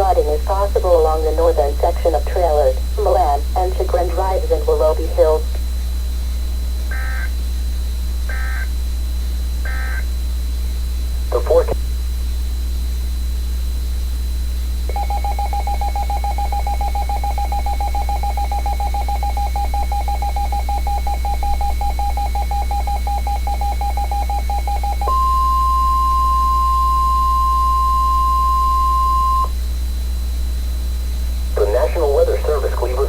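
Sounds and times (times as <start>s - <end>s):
steady low hum: 0.0s - 33.0s
steady alarm tone: 6.8s - 10.3s, 14.9s - 32.6s
beating dual-tone alert buzz: 6.9s - 7.4s, 8.3s - 8.8s, 9.6s - 10.2s, 14.9s - 29.6s.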